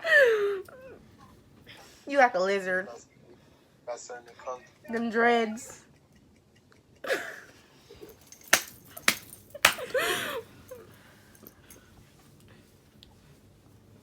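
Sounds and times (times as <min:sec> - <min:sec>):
sharp smacks: 0:08.5 - 0:09.9.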